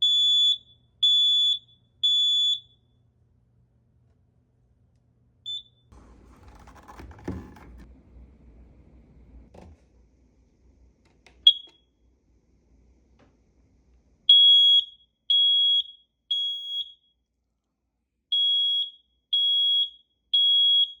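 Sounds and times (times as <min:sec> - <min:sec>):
high-pitched smoke alarm beeps: 0:00.0 - 0:03.0, 0:05.5 - 0:05.9, 0:11.5 - 0:11.8, 0:14.3 - 0:17.2, 0:18.3 - 0:21.0
smoke alarm chirp: 0:00.0 - 0:03.0, 0:05.5 - 0:05.9, 0:11.5 - 0:11.8, 0:14.3 - 0:17.2, 0:18.3 - 0:21.0.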